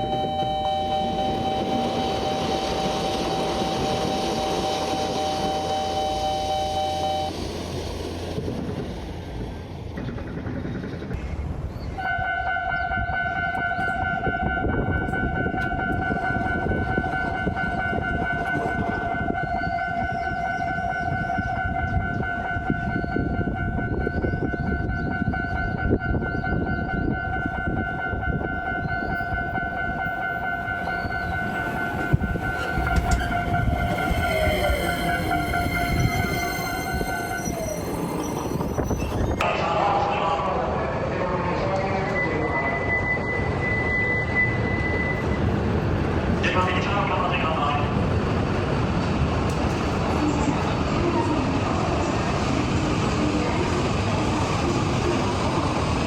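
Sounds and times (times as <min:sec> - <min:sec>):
level crossing alarm ringing: 0:00.0 - 0:07.5, 0:12.9 - 0:39.4
crossing alarm at different pitch: 0:00.0 - 0:07.7, 0:12.1 - 0:39.4
passing train: 0:00.0 - 0:56.0.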